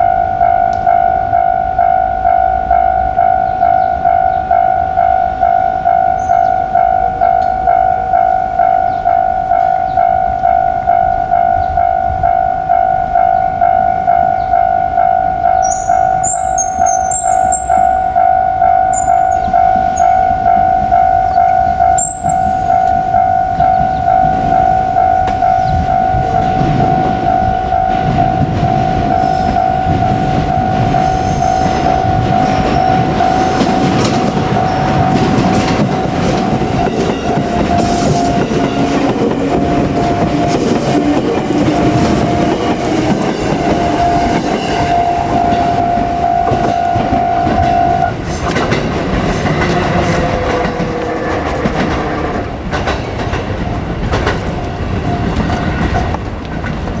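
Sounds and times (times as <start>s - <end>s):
level crossing warning bell: 0.0s - 52.1s
train wheels clacking over rail joints: 31.6s - 57.0s.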